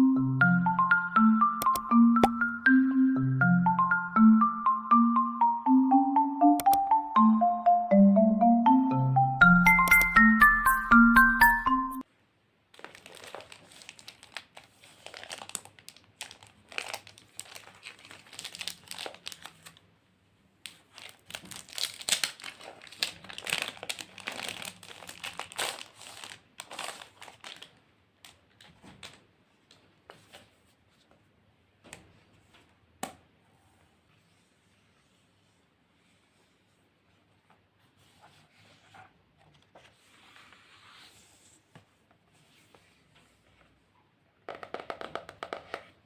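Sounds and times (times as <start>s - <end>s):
click: 1.6s - 2.3s, 6.6s - 6.8s
packaging crinkling and rustling: 12.7s - 19.8s, 20.7s - 29.3s
packaging tearing: 12.8s - 19.8s, 20.9s - 28.4s.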